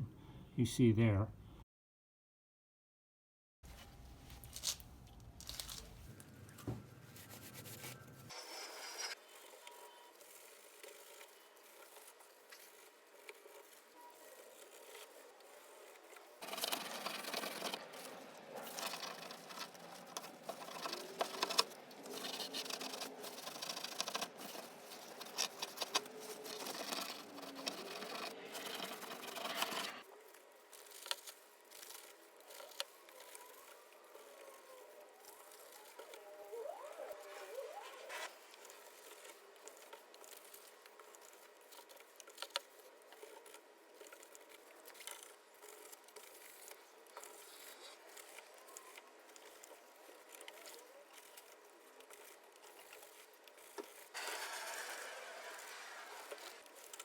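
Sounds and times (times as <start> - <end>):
hands rustling and rubbing: 3.7 - 9.2.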